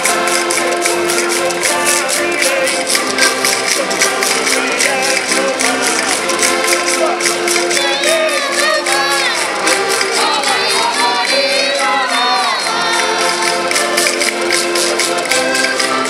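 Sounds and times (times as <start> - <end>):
concertinas holding chords: 0.0 - 16.0
women singing together: 7.8 - 13.6.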